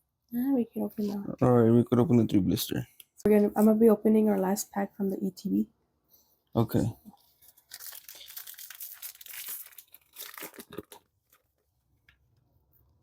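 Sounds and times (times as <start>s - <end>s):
foil pack tearing and crinkling: 7.5s - 11.4s.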